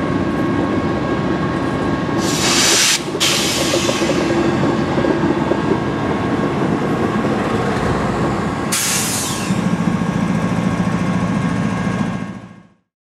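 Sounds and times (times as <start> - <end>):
freight train rumbling on rails: 0.0 - 12.9
air hiss: 2.2 - 4.2, 8.7 - 9.6.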